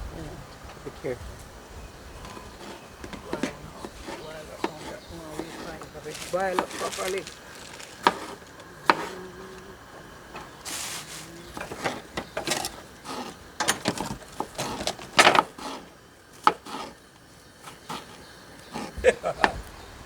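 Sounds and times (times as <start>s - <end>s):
knife chopping on wooden board: 2.6s - 9.2s.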